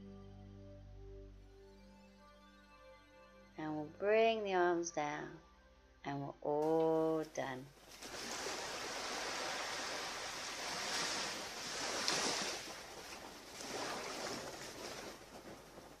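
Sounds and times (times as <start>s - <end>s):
ocean waves washing onto beach: 7.8s - 16.0s.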